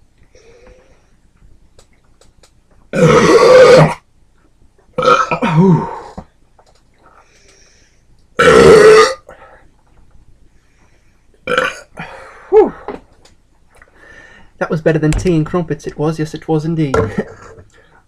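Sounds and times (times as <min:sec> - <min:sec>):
man belching loudly: 0:02.9 - 0:04.0, 0:05.0 - 0:06.0, 0:08.4 - 0:09.2, 0:11.4 - 0:11.9.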